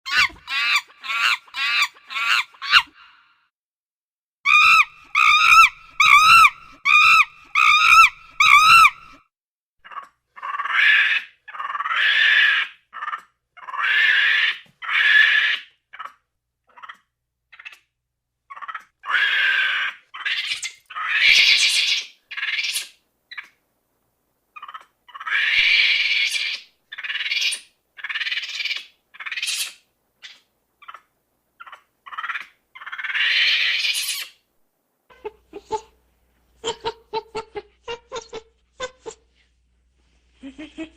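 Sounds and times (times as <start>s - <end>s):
monkey calling: 0.1s - 3.0s, 4.5s - 9.2s, 9.8s - 17.0s, 18.5s - 23.4s, 24.6s - 34.4s
monkey screeching: 0.1s - 3.0s, 4.5s - 9.2s, 9.8s - 17.0s, 18.5s - 23.4s, 24.6s - 31.0s, 31.6s - 34.4s.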